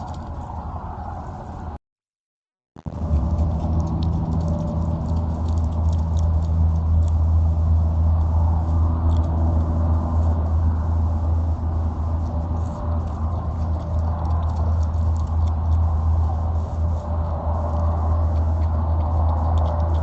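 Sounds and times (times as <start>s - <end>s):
steady low hum: 2.8s - 20.0s
light ticks and rustles: 11.2s - 20.0s.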